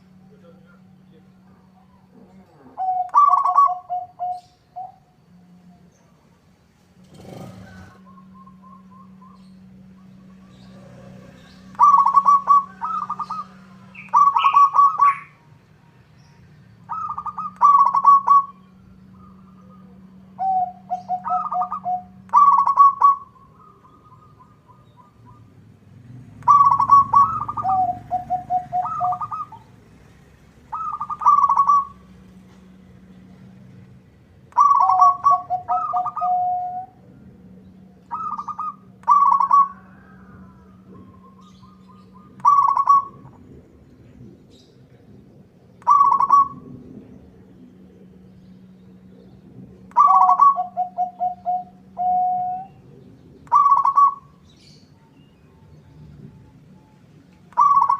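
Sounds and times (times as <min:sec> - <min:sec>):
dove cooing: 0:00.0 - 0:05.9, 0:07.0 - 0:15.6, 0:16.8 - 0:25.7, 0:26.3 - 0:33.5, 0:34.5 - 0:43.4, 0:45.8 - 0:46.9, 0:49.8 - 0:54.8, 0:57.5 - 0:57.9
faint low hum: 0:00.0 - 0:57.9.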